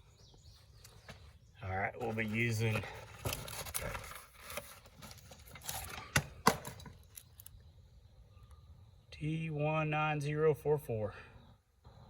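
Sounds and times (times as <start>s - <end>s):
rustling and small clattering: 2.0s - 7.5s.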